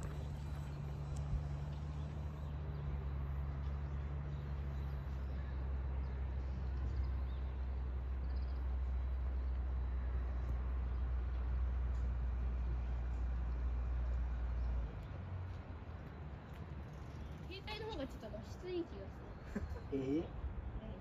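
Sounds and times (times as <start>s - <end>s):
low machine hum: 0.0s - 15.1s.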